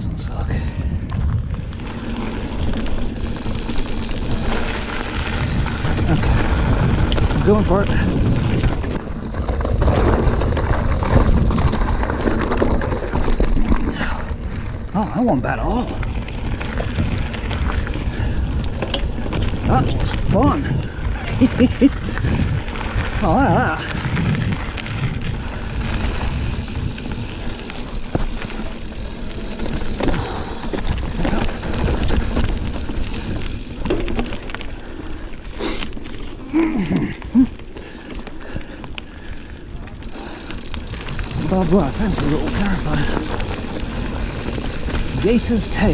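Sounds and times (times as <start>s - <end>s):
wind buffeting microphone: 0.0s - 35.0s
mountain bike riding on dirt trail: 0.0s - 45.9s
bike clicks and knocks: 1.0s - 14.9s, 15.8s - 21.0s, 24.1s - 45.9s.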